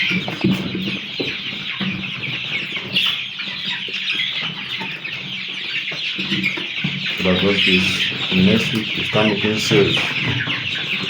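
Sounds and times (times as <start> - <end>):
chicks peeping: 0.0 - 11.0.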